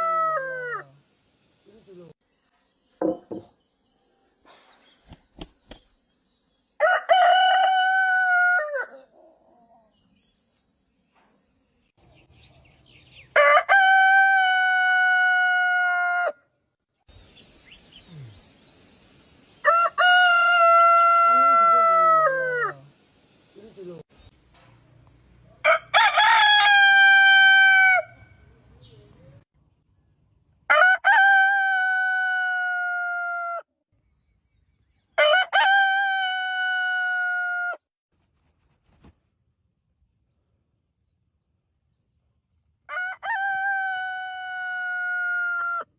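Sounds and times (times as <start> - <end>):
rooster crowing: 6.8 - 9.1, 19.6 - 22.8, 25.6 - 28.3, 30.7 - 33.7, 35.2 - 37.8, 42.9 - 45.9.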